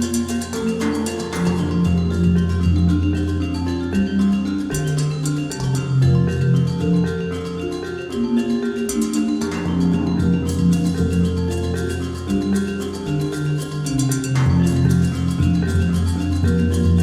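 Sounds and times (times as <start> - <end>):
mallet percussion music with beat: 0.0 - 17.0.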